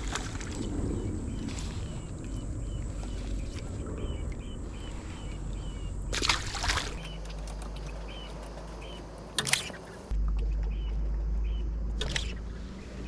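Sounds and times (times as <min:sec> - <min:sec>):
water splashing: 0:00.0 - 0:04.0, 0:04.6 - 0:10.1
outdoor background: 0:00.0 - 0:13.0.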